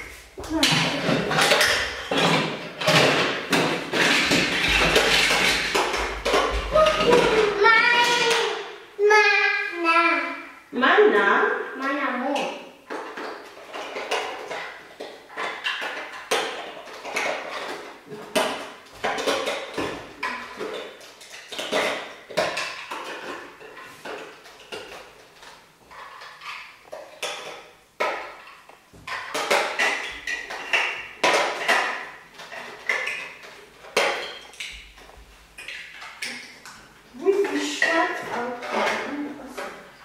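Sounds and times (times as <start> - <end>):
plastic bricks clattering: 0.0 - 8.6, 12.9 - 40.0.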